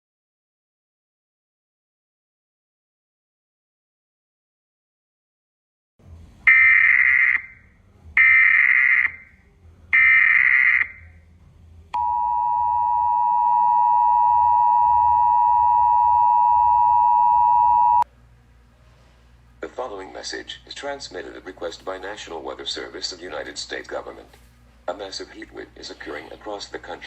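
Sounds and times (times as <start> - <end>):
two-tone alert signal: 12.0 - 18.0.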